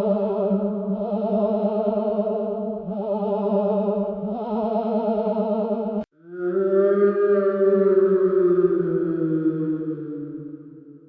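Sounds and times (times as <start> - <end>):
ghostly wailing moan: 6.2 - 10.9.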